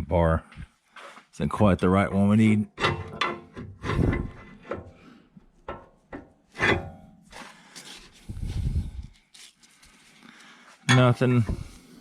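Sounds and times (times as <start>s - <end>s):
metal scraping rub: 2.8s - 5.0s.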